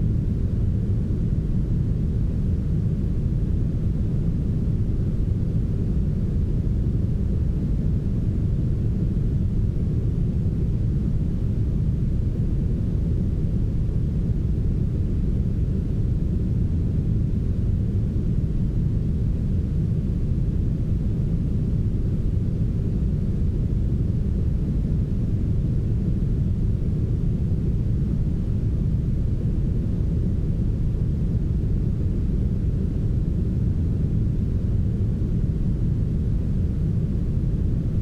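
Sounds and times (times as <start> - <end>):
brown noise rumble: 0.0 - 38.0.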